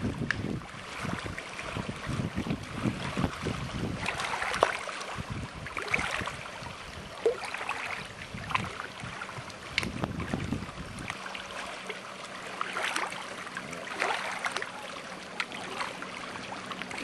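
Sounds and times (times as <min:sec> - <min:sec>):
short sharp splashes: 0:00.0 - 0:06.5, 0:07.2 - 0:17.0
wind buffeting microphone: 0:00.0 - 0:11.2
choppy lake water splashing: 0:00.0 - 0:17.0.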